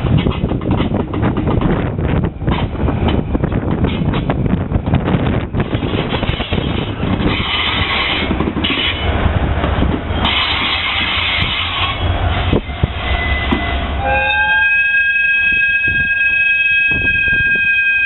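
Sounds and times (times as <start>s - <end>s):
locomotive engine rumble: 0.0s - 17.8s
hissing wheels on rails: 2.5s - 13.9s
high steady tone: 12.6s - 18.0s.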